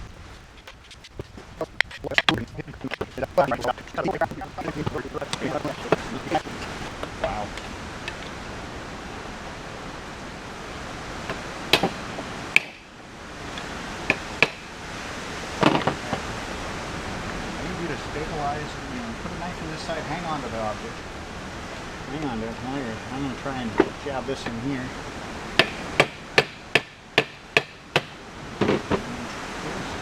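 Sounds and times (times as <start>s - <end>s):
faint hiss: 0.0s - 12.4s
steady background hiss: 0.0s - 30.0s.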